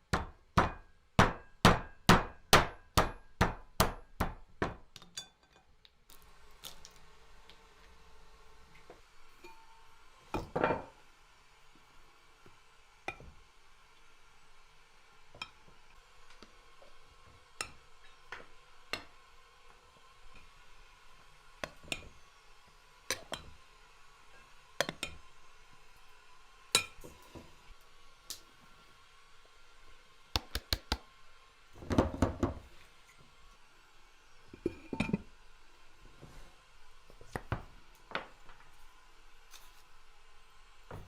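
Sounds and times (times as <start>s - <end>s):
utensils and dishes clinking: 9.4s - 9.8s, 34.6s - 35.3s.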